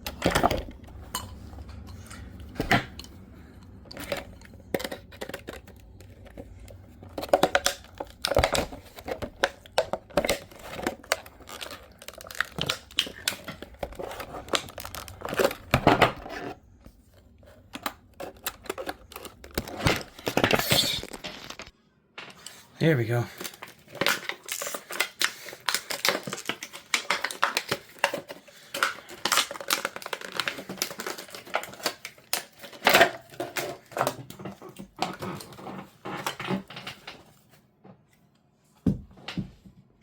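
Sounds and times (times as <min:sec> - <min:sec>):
plastic and cardboard crinkling: 0:01.9 - 0:21.7, 0:22.5 - 0:37.8.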